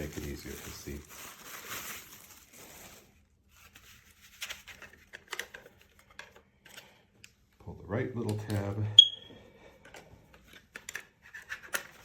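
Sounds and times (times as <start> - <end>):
packaging rustling and crinkling: 0.0 - 6.8.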